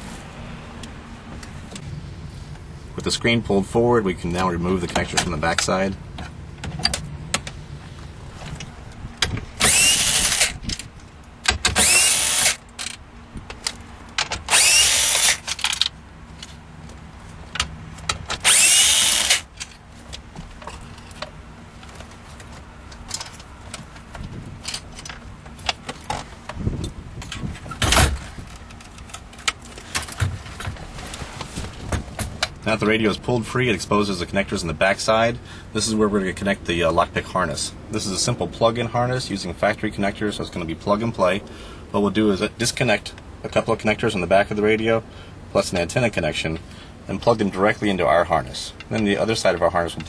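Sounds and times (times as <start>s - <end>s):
handling clicks and knocks: 4.8s - 7.6s, 12.6s - 14.5s, 15.5s - 18.4s, 19.5s - 32.6s
power screwdriver running: 9.6s - 10.6s, 11.7s - 12.6s, 14.5s - 15.6s, 18.4s - 19.5s.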